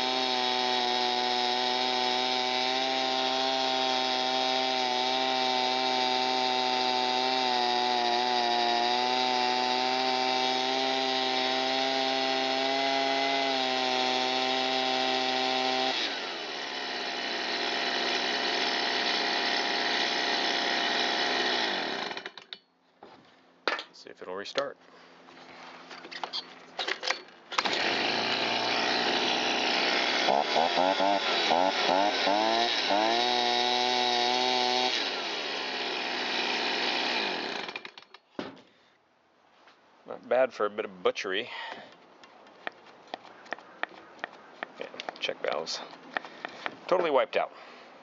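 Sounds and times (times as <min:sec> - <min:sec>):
leaf blower engine running: 0:00.0 - 0:22.4, 0:27.6 - 0:37.9.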